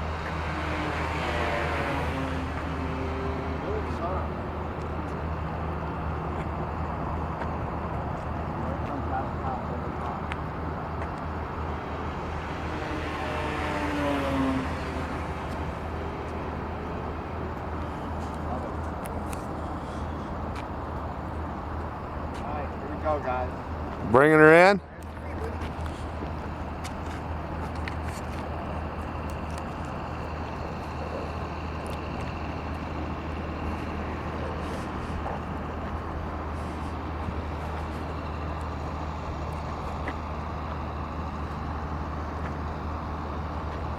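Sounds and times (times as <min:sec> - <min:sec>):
model plane motor flying past: 0:12.3 - 0:16.0.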